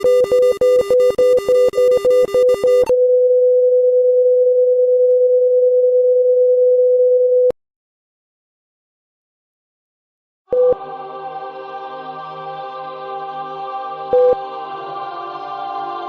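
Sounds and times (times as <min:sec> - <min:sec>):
steady electronic beep tone: 0:00.0 - 0:03.0, 0:10.5 - 0:10.8, 0:14.1 - 0:14.4.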